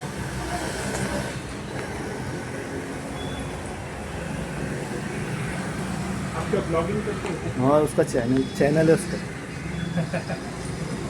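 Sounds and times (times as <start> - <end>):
road traffic rumble: 0.0 - 11.0.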